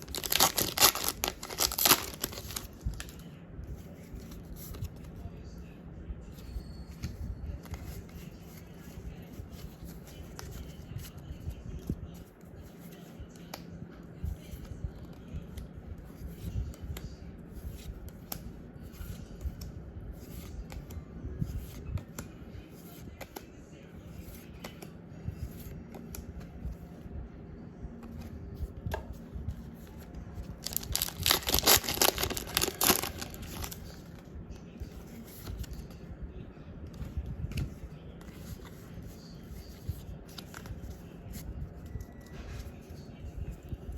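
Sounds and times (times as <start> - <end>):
foil wrapper tearing: 0.0 - 2.6, 30.6 - 33.8
cards and packaging rustling: 0.0 - 5.2, 28.9 - 36.0, 37.0 - 43.9.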